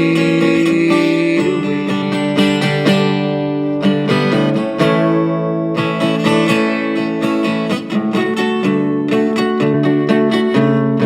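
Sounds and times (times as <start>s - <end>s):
acoustic guitar strummed: 0.0s - 11.0s.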